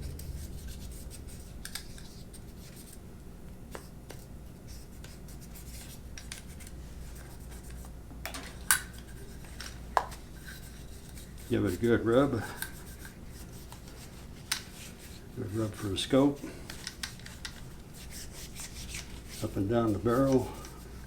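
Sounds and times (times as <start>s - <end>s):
cloth rubbing on metal: 8.9s - 16.6s, 17.2s - 21.0s.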